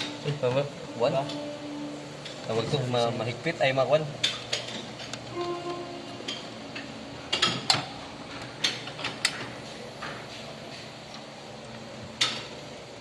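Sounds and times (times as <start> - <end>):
clicks and clattering knocks of tools: 4.2 - 5.4, 6.3 - 10.3.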